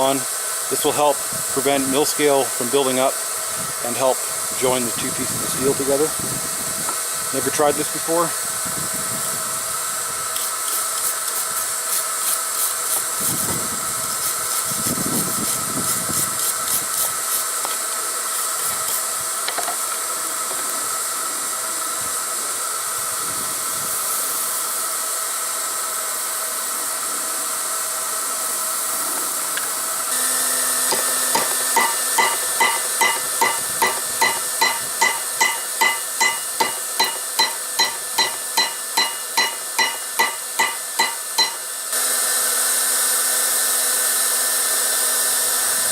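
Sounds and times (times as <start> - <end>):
forge air blast hissing: 0.0 - 42.1
hammer striking steel on anvil: 30.9 - 41.7.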